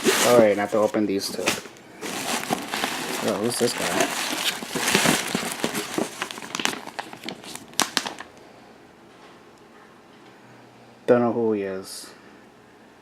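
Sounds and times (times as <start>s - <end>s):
cardboard and plastic packaging crinkling: 0.0s - 8.4s.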